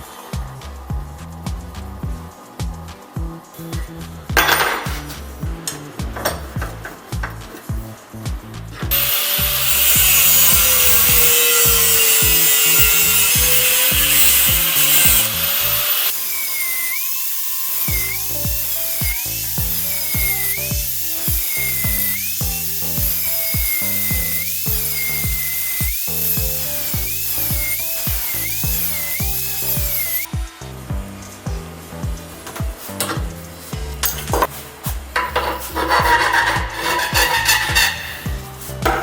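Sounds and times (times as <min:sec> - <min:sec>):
high whine: 0:00.0 - 0:35.2
background music with steady beat: 0:00.0 - 0:39.0
power tool cutting or grinding: 0:08.9 - 0:30.3, 0:35.3 - 0:39.0.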